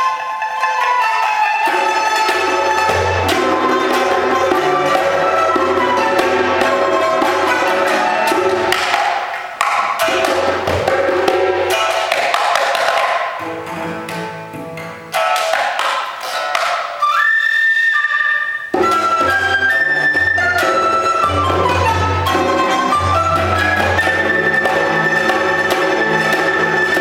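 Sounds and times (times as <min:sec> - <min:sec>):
flute melody: 0:00.0 - 0:09.0, 0:16.6 - 0:27.0
plucked lute: 0:00.0 - 0:27.0
sharp percussive strokes: 0:00.8 - 0:27.0
low cello notes: 0:01.6 - 0:15.2, 0:18.1 - 0:27.0.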